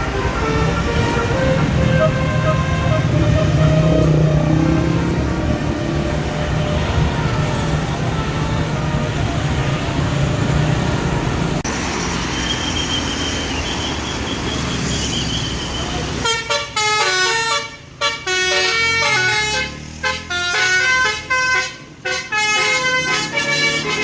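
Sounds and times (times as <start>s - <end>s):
musical air horn melody: 0.0s - 4.5s, 16.2s - 24.0s
engine and road noise: 0.0s - 24.0s.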